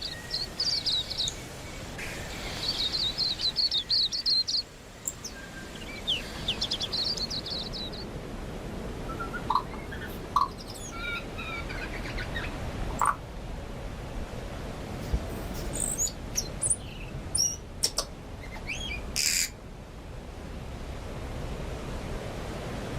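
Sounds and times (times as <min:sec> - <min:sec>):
bird singing: 0:00.0 - 0:08.1, 0:09.1 - 0:13.2, 0:15.7 - 0:19.5
background hiss: 0:00.0 - 0:22.9.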